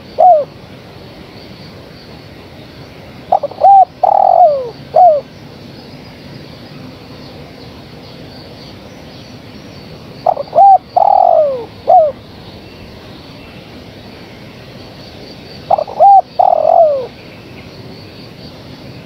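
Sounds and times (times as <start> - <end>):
dove cooing: 0.0 - 0.6, 3.3 - 5.3, 10.2 - 12.2, 15.7 - 17.2.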